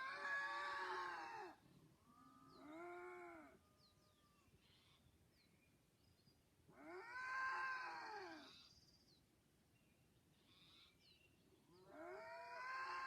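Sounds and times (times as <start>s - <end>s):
wailing animal calls: 6.8s - 8.7s, 11.9s - 13.0s.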